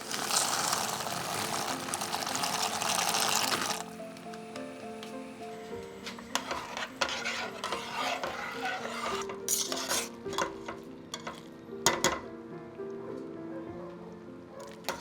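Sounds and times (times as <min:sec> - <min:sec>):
utensil scraping a pan: 0:00.0 - 0:03.9, 0:06.0 - 0:11.5
food sizzling in a frying pan: 0:00.0 - 0:10.6.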